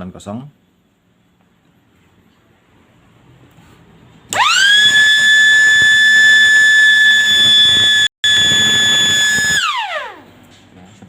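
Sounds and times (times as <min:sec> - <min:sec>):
electric siren wailing: 0:04.4 - 0:10.3.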